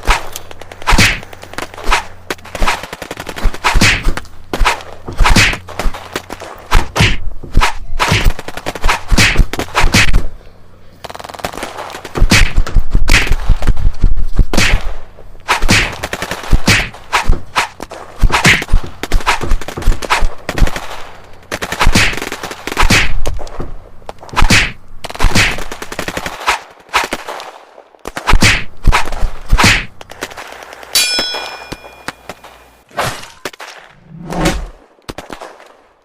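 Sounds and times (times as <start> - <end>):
punch and hit impacts: 0.0 - 1.3, 3.5 - 10.3, 12.1 - 13.8, 14.4 - 14.9, 15.5 - 20.7, 21.8 - 22.2, 22.8 - 23.7, 24.4 - 25.6, 28.3 - 29.9
metallic ring: 31.0 - 32.4.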